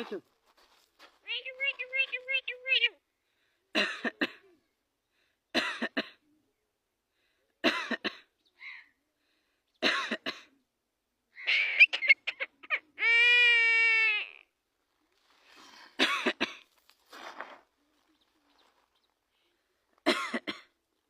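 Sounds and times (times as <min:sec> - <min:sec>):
long steady bird call: 0:10.6 - 0:14.6.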